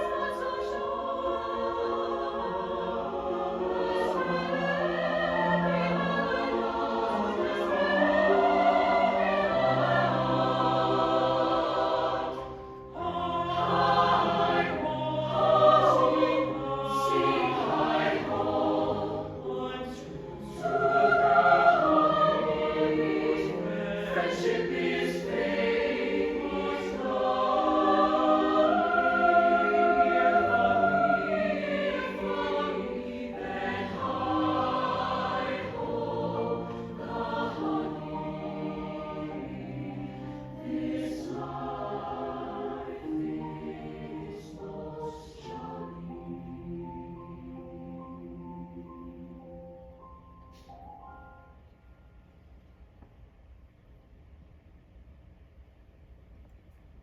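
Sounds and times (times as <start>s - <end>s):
choir singing in parts: 0.0s - 50.7s.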